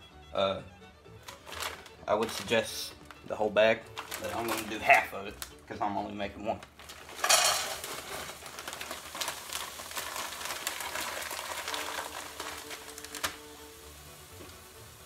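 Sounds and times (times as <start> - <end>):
vegetables sizzling in a pan: 7.1 - 15.0.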